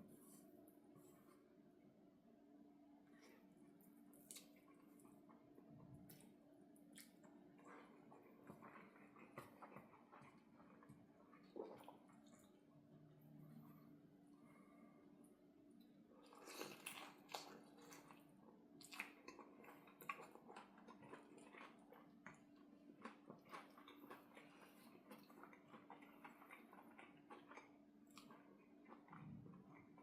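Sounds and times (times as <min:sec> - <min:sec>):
faint steady hum: 0:00.0 - 0:30.0
wet chewing and smacking: 0:04.1 - 0:12.6, 0:16.2 - 0:30.0.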